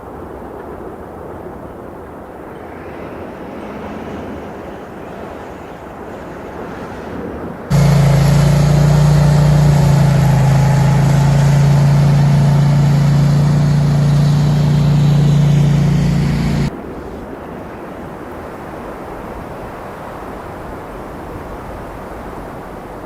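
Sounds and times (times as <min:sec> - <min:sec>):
engine running with hiss: 0:07.7 - 0:16.7.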